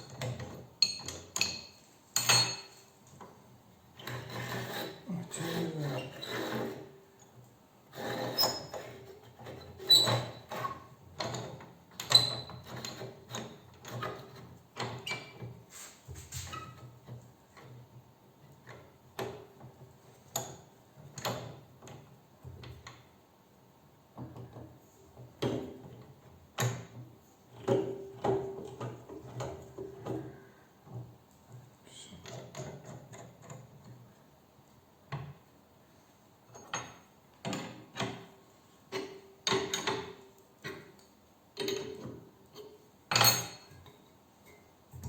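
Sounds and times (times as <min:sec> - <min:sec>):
knocks and scrapes of hand tools: 0:04.0 - 0:06.9, 0:07.9 - 0:17.8.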